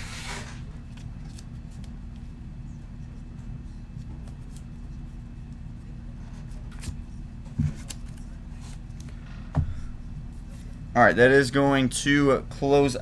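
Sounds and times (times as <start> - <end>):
dull knock: 9.5 - 10.0.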